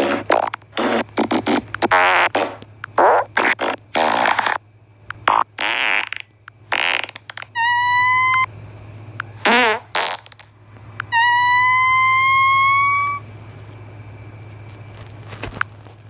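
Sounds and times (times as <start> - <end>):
fart sounds: 0.0 - 4.6, 5.2 - 8.5, 9.4 - 10.5, 11.2 - 13.2.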